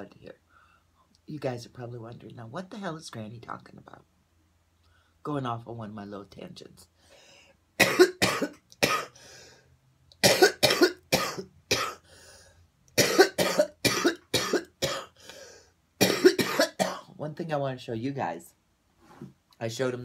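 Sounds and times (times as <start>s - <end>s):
woman coughing hard: 7.8s - 9.2s, 10.2s - 12.0s, 13.0s - 15.2s, 16.0s - 17.1s.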